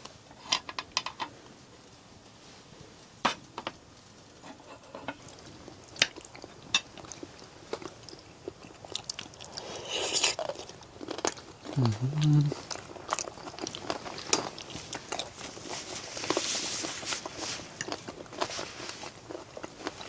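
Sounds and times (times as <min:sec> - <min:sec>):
person chewing and crunching: 0:05.2 - 0:20.0.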